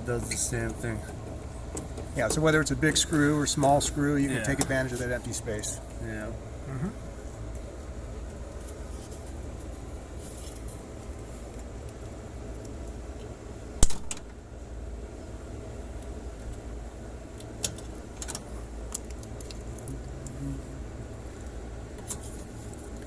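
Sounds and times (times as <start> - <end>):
low hum: 0.0 - 23.0
sharp loud click: 13.8 - 14.3
clicks of tools and wire: 17.4 - 20.0.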